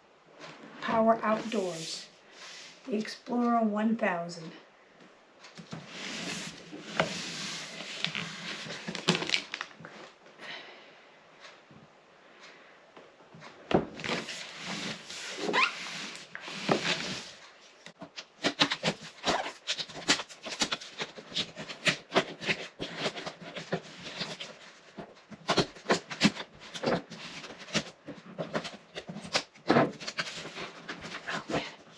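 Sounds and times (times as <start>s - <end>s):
cardboard scraping and rubbing: 5.8s - 9.6s, 14.0s - 17.4s, 18.0s - 31.9s
cardboard crackling and clicking: 6.2s - 9.9s, 13.8s - 31.9s.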